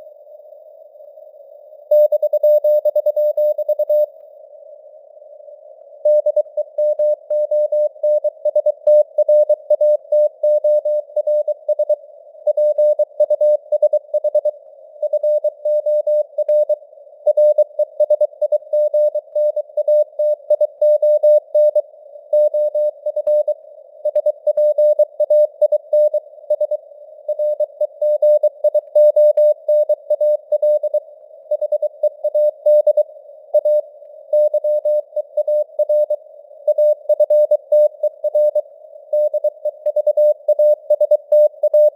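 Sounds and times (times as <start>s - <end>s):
faint radio hiss: 0.0s - 2.0s, 2.6s - 8.4s, 12.0s - 12.5s, 14.4s - 15.6s, 16.8s - 17.2s, 22.9s - 24.1s, 26.2s - 28.6s, 29.5s - 40.9s.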